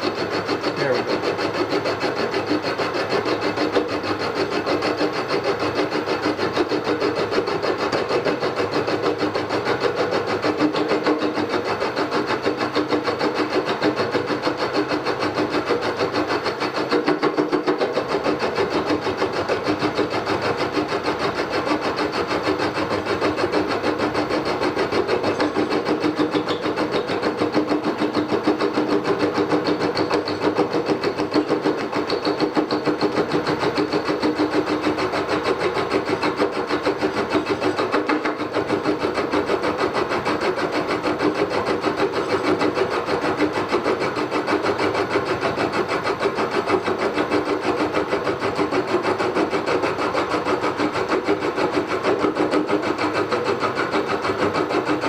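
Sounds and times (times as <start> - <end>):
milling machine whine: 0.0 - 55.0
cutter chatter: 0.4 - 4.8.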